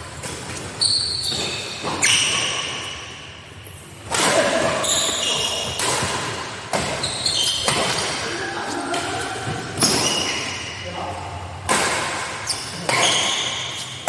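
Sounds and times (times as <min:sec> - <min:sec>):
shoes squeaking on court: 0:00.1 - 0:03.9, 0:04.8 - 0:06.2, 0:06.8 - 0:08.2, 0:09.4 - 0:10.8, 0:12.4 - 0:14.0
racket hitting shuttlecock: 0:04.0 - 0:08.3, 0:11.6 - 0:14.0.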